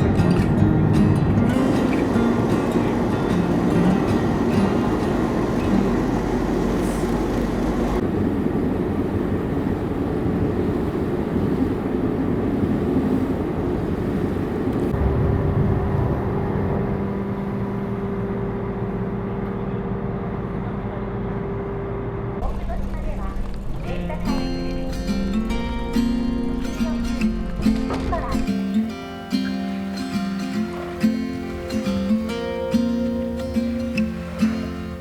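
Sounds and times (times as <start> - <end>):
ferry engine rumbling: 0.0 - 35.0.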